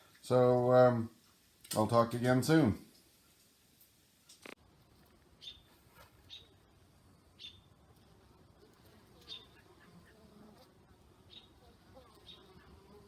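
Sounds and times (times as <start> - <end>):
honeybees buzzing: 4.6 - 13.0.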